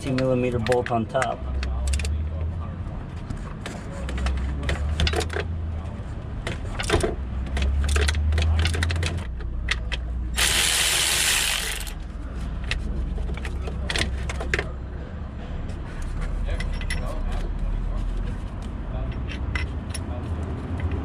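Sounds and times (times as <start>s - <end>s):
harsh burst of noise: 10.4s - 12.0s.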